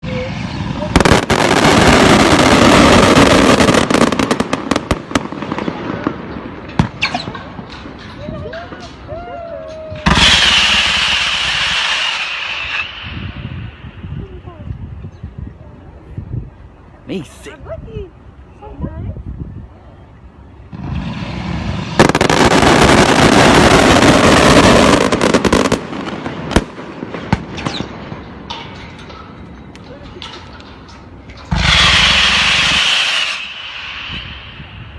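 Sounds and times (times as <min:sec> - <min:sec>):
fireworks crackling bangs: 0:00.0 - 0:14.4, 0:20.7 - 0:34.9
firework whistle: 0:09.9 - 0:13.9, 0:31.5 - 0:34.9
sharp firework cracks: 0:10.0 - 0:13.8, 0:20.8 - 0:28.3, 0:31.4 - 0:34.9
fireworks pops: 0:25.0 - 0:34.7.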